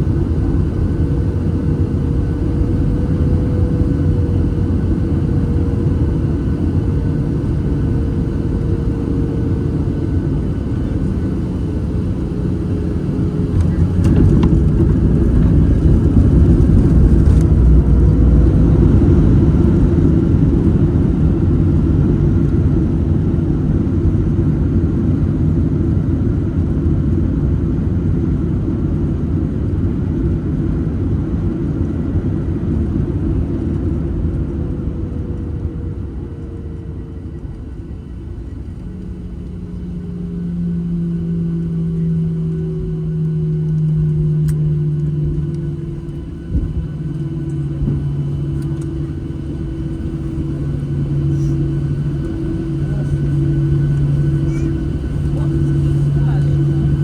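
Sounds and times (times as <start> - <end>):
faint falling whine: 0.0 - 22.2, 33.7 - 57.0
aircraft engines and wheels rumble: 0.0 - 57.0
steady engine drone: 0.0 - 57.0.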